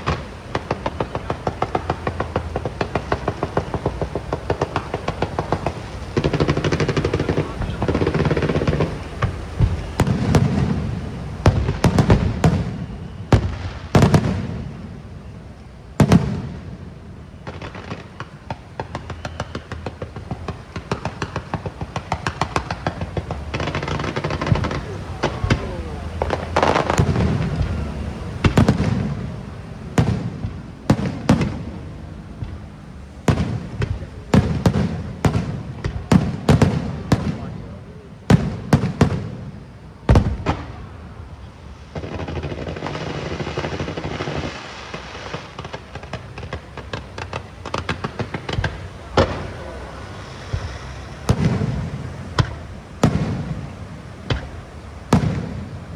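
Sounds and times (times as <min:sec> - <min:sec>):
fireworks bursting with bangs: 0:00.0 - 0:55.9
rapid crackling pops: 0:00.0 - 0:55.9.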